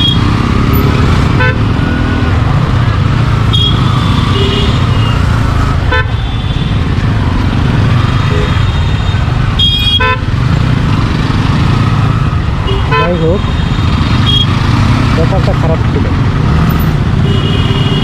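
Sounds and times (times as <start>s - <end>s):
vehicle horn toots: 3.5s - 5.2s, 9.6s - 10.3s, 12.6s - 14.6s, 17.2s - 18.0s.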